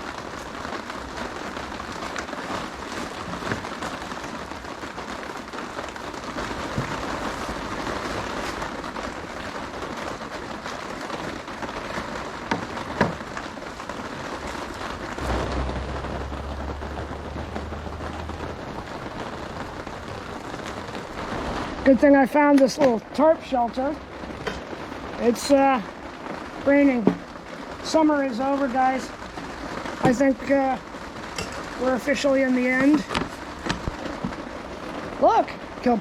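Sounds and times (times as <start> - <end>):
rain on a tarp: 0.0 - 36.0
low rumble: 15.0 - 21.9.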